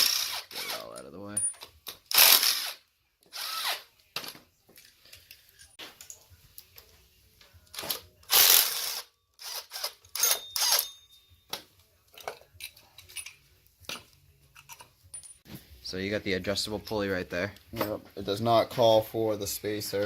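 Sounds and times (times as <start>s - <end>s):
tools and engine parts clinking: 0.8s - 2.2s, 4.2s - 6.9s, 9.4s - 15.5s.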